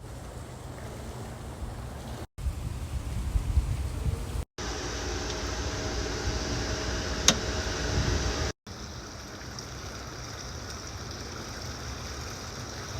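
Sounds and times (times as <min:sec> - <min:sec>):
running water rushing: 0:04.6 - 0:12.9.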